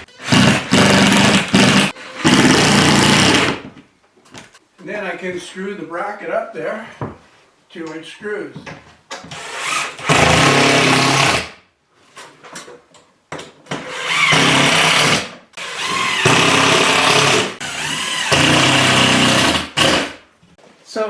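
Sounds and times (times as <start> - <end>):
power drill driving screws: 9.3 - 11.5, 13.8 - 20.2.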